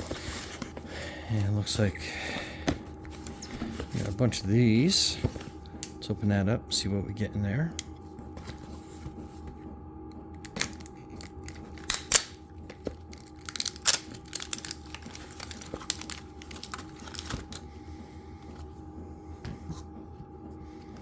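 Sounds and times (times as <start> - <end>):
wrapping rustling: 12.8 - 17.7.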